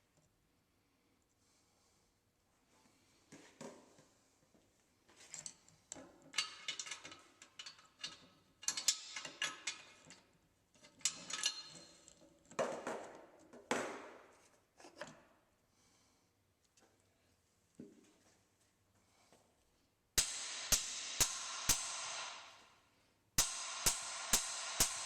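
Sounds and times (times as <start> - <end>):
metal tools clinking and clattering: 6.3 - 10.2, 10.8 - 12.2.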